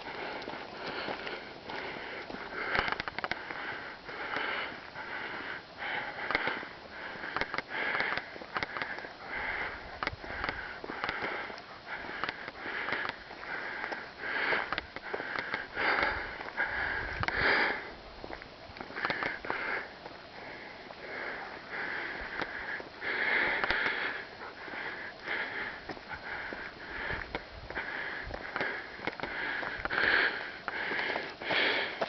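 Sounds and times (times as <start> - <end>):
person breathing hard: 0.0 - 32.0
sharp clicks: 2.6 - 3.6, 7.3 - 9.1, 10.0 - 13.2, 14.6 - 16.2, 18.9 - 19.6, 23.6 - 24.0.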